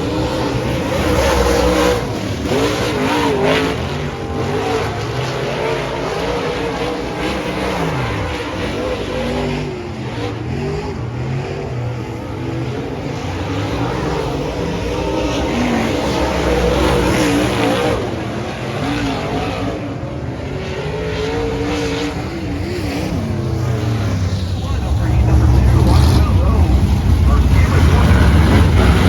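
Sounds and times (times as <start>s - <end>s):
race car engines revving: 0.0s - 29.0s.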